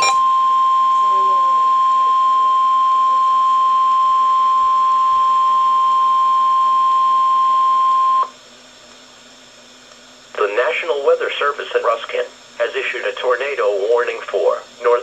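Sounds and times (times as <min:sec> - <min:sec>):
steady high alarm beep: 0:00.0 - 0:08.3
faint radio hiss: 0:09.8 - 0:15.0.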